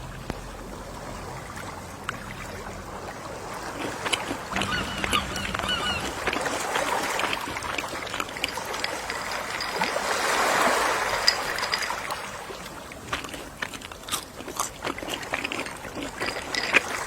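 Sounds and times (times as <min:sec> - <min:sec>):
sea waves washing onto shore: 0:00.0 - 0:13.6.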